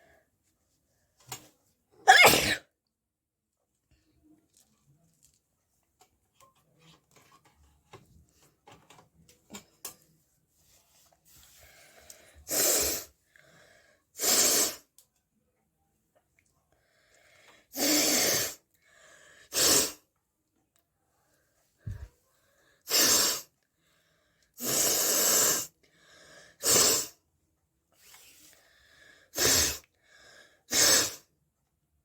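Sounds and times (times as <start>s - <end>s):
person sneezing: 2.1s - 2.7s, 30.7s - 31.2s.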